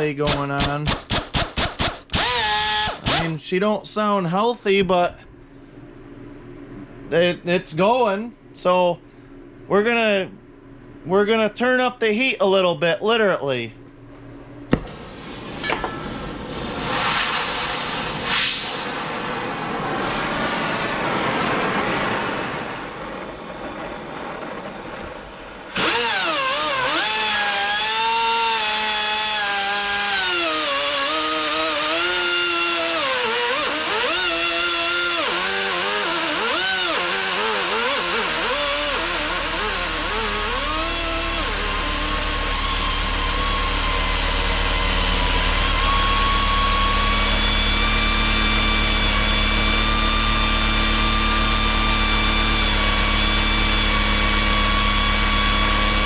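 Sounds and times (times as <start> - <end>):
pneumatic angle grinder whine: 0.0 - 3.4, 14.7 - 56.0.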